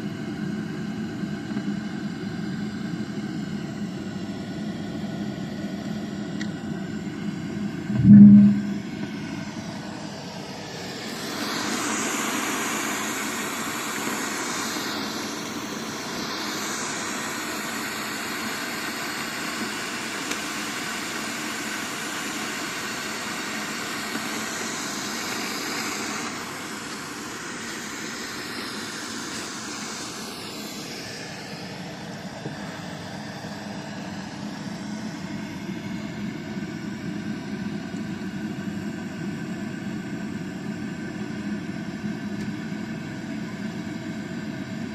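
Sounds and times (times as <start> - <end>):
heavy thump: 7.9 - 8.9
low rumbling through speaker: 7.9 - 9.0.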